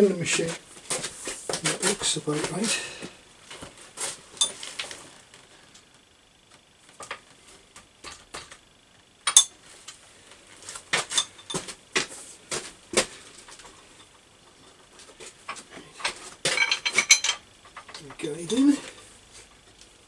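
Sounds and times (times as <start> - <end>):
metal parts clinking: 16.5 - 19.0.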